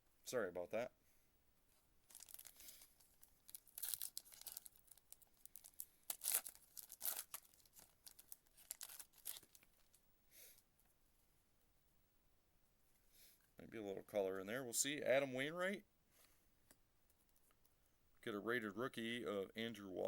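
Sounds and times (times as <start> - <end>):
foil wrapper tearing and crinkling: 2.1 - 10.0.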